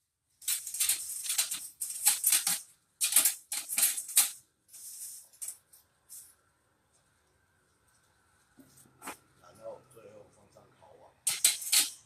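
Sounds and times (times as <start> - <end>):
metal grill rattling and scraping: 11.3 - 12.0.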